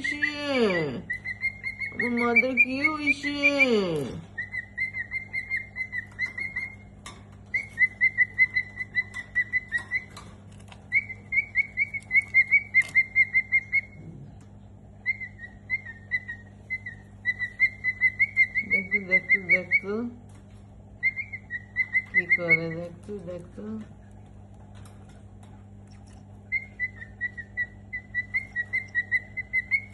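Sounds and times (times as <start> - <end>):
cockatiel chirping: 0.0 - 3.8, 4.4 - 6.9, 7.5 - 14.0, 15.0 - 19.9, 21.0 - 23.0, 26.5 - 29.9
faint low hum: 0.0 - 29.9.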